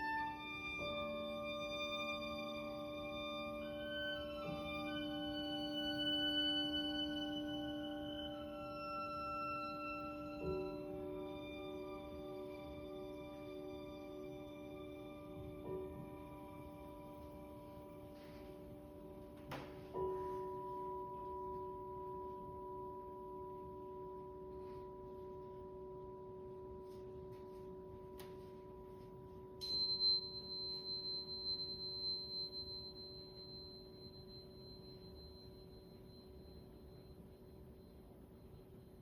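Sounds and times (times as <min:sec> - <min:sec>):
singing bowl ringing: 0:00.0 - 0:39.0
small high chime: 0:00.0 - 0:39.0.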